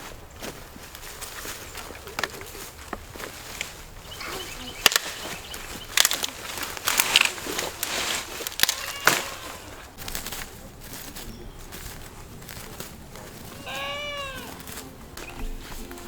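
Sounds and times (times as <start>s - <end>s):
rustling: 0.0s - 16.0s
goat bleating: 7.3s - 9.8s, 13.3s - 16.0s.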